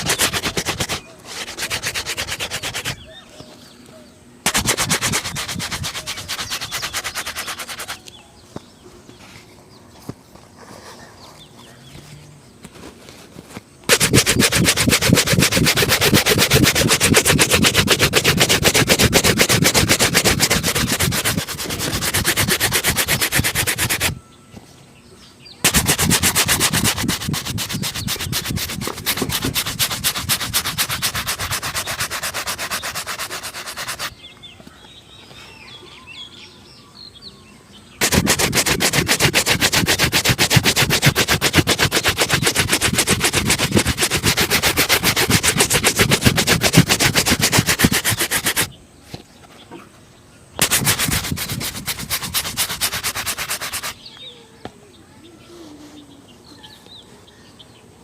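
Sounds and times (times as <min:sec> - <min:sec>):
brush scrubbing leather shoe: 0:00.0 - 0:03.1, 0:04.5 - 0:08.0, 0:13.9 - 0:24.2, 0:25.6 - 0:34.1, 0:38.0 - 0:48.7, 0:50.6 - 0:54.0.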